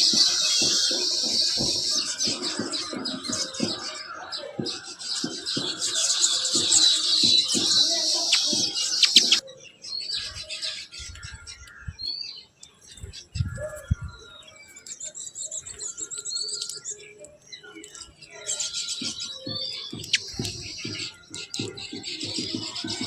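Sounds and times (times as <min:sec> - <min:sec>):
bird whistles: 0:00.0 - 0:03.5, 0:05.4 - 0:09.4, 0:18.5 - 0:21.5
birds chirping: 0:00.0 - 0:23.0.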